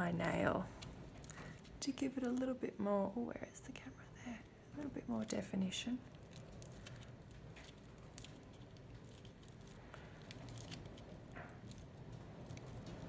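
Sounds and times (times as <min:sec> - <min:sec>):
aluminium foil crinkling: 0:00.0 - 0:02.6, 0:04.8 - 0:13.0.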